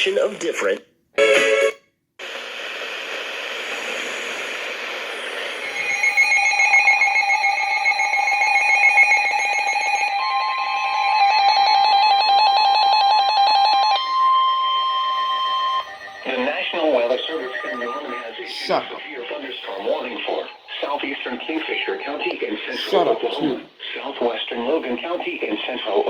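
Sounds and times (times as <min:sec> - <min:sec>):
radio hiss: 0:02.2 - 0:06.7, 0:14.5 - 0:26.0
steady warning tone: 0:04.6 - 0:26.0
electronic alert beeps: 0:05.5 - 0:23.6.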